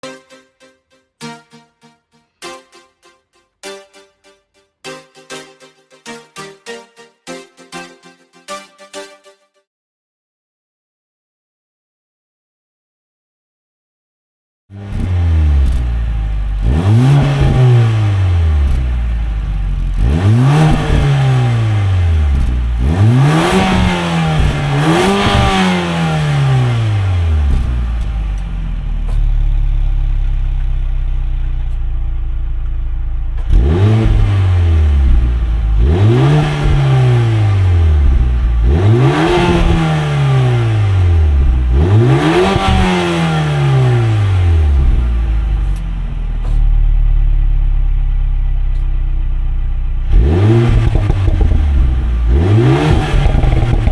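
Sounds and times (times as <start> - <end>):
car engine revving: 14.7 - 31.8, 32.4 - 47.8, 50.0 - 53.9.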